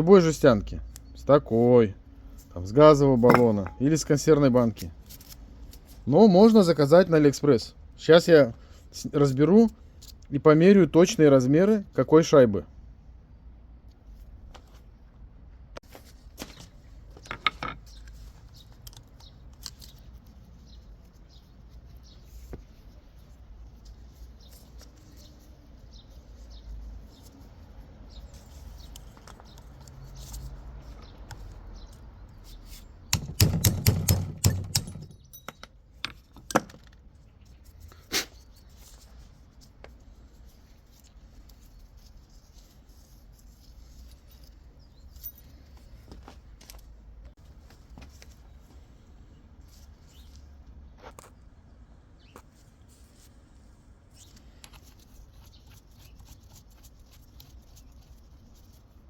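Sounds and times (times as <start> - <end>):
metal gearbox parts clinking: 33.6 - 36.4.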